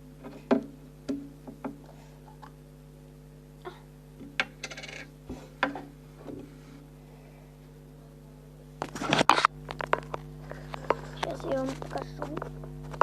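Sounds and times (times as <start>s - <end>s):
steady low hum: 0.0s - 13.0s
small hard objects knocking: 9.7s - 13.0s.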